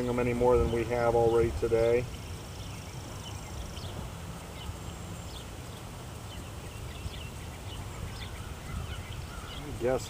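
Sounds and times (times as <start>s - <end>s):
small birds chirping: 0.0s - 10.0s
steady low rumble: 0.0s - 10.0s.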